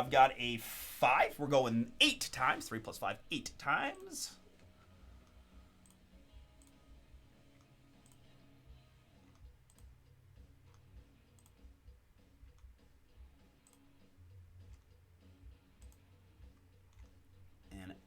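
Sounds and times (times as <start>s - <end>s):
computer mouse clicks: 6.6s - 6.9s, 7.6s - 8.4s, 9.2s - 9.9s, 10.6s - 11.6s, 13.6s - 13.8s, 15.8s - 16.0s, 16.9s - 17.2s.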